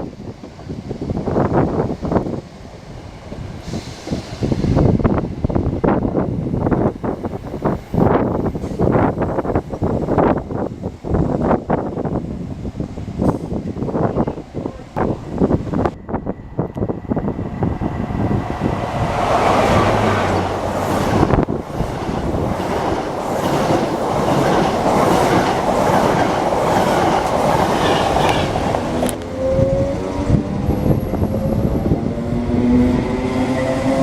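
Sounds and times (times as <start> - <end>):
rising train whine: 0.0 - 34.0
train rushing: 0.0 - 34.0
train wheels clattering: 19.1 - 29.2.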